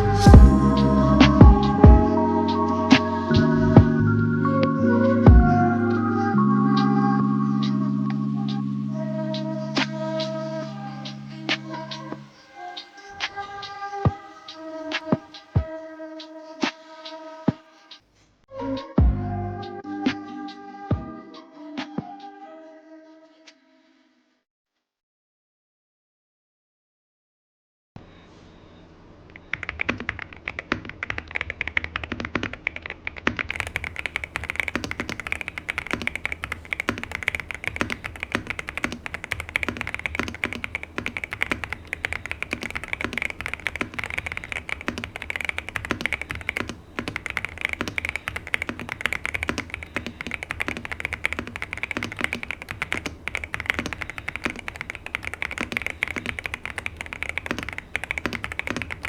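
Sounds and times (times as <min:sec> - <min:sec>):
mechanical keyboard typing: 0:29.5 - 0:59.0.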